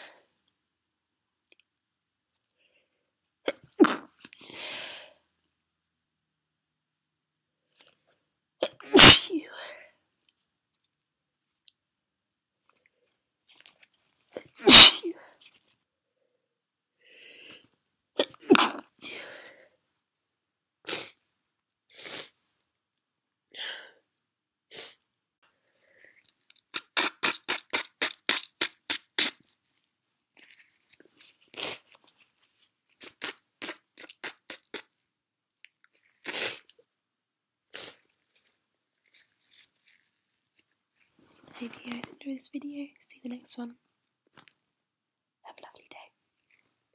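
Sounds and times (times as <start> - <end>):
woman sneezing: 8.6 - 9.6, 14.6 - 15.2, 18.2 - 18.9
forceful nose blast: 8.9 - 9.4, 14.6 - 15.1, 26.7 - 29.4.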